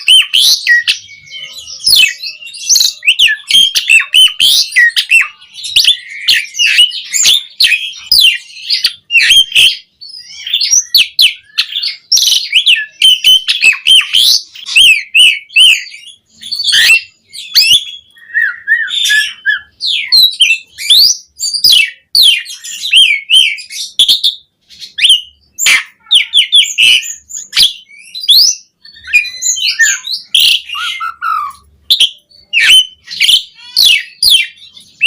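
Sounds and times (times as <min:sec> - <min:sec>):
starling singing: 0:00.0 - 0:35.0.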